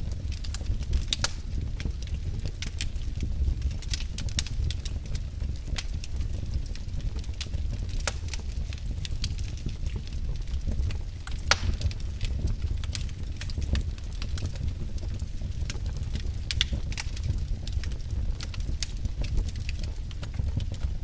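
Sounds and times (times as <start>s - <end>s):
steady low rumble: 0.0s - 21.0s
wood fire crackling: 0.0s - 21.0s.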